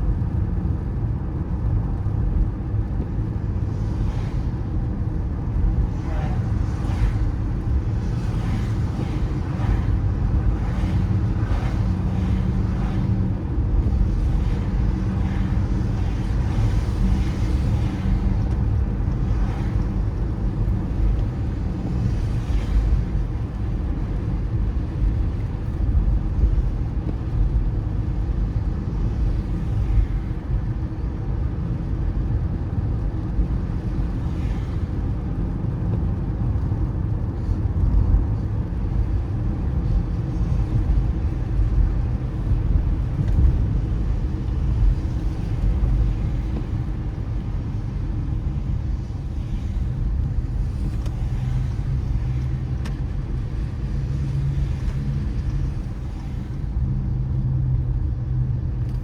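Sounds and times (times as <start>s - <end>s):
car engine and tyres rumbling: 0.0s - 59.0s.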